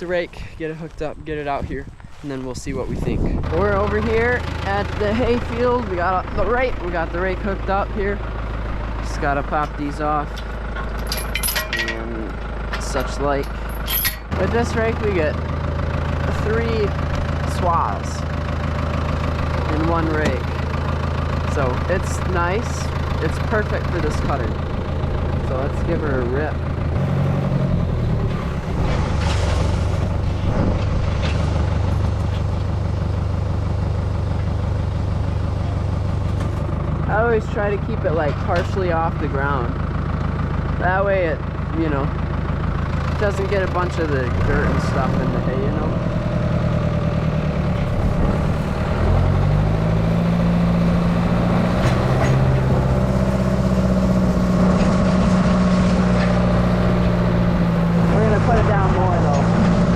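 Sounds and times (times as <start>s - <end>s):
tractor engine running: 0.0s - 59.9s
hay rake rattles and clanks: 2.2s - 27.0s.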